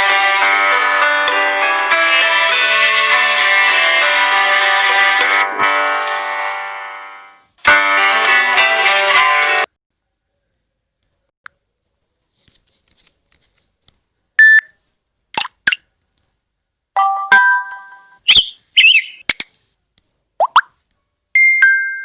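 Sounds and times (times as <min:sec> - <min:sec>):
electronic alert tones: 0:17.0 - 0:19.2.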